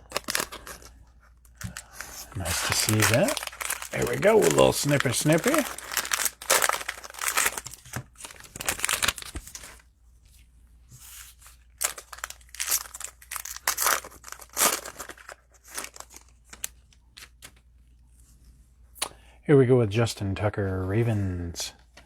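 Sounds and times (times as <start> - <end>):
cellophane wrapper crinkling: 0.0 - 9.9, 11.1 - 17.6.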